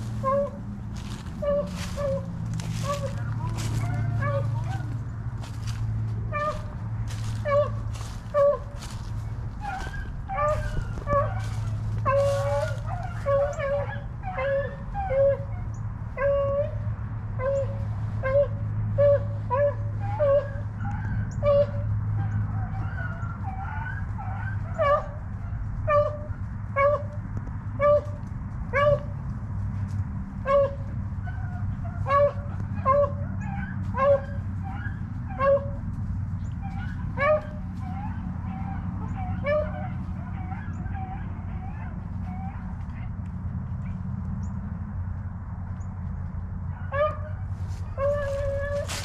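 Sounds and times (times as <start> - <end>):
hounds baying: 0.0 - 44.6, 46.6 - 49.0
steady low hum: 0.0 - 49.0.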